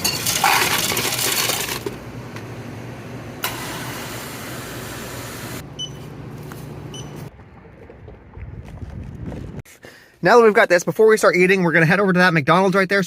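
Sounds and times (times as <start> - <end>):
short electronic beeps: 5.8 - 6.1, 6.9 - 7.3.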